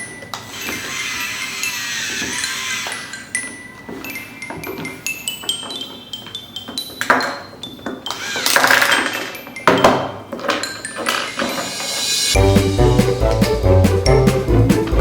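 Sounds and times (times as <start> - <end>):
chiming bell-like music: 3.0 - 7.8
plastic toy parts clattering: 4.5 - 12.0.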